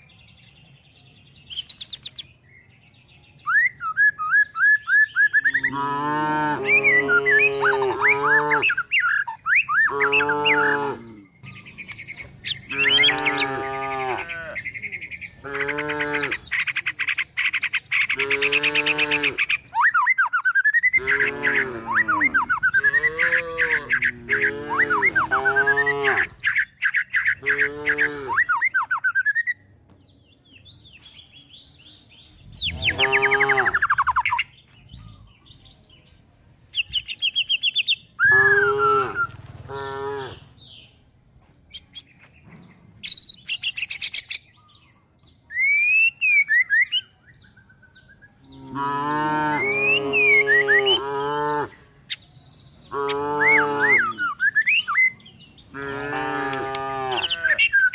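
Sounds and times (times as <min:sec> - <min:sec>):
birds chirping and whistling: 0:00.0 - 0:57.9
cattle and calves calling: 0:05.3 - 0:09.0, 0:09.6 - 0:16.7, 0:18.0 - 0:19.7, 0:20.8 - 0:26.6, 0:27.2 - 0:28.8, 0:32.6 - 0:34.4, 0:38.2 - 0:40.6, 0:48.6 - 0:51.8, 0:52.8 - 0:54.4, 0:55.6 - 0:57.9.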